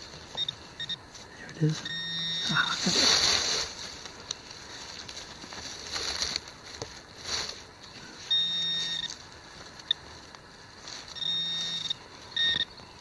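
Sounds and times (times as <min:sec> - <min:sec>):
digging in soil: 0:01.5 - 0:13.0
metal detector tone: 0:01.8 - 0:02.7, 0:08.2 - 0:09.1, 0:11.1 - 0:12.8.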